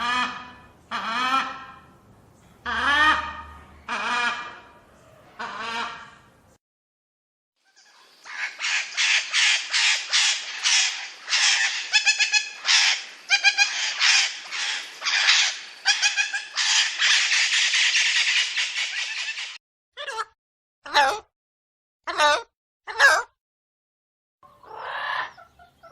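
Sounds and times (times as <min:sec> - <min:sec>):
parrot calling: 0:07.8 - 0:20.3, 0:20.9 - 0:21.3, 0:22.1 - 0:23.3.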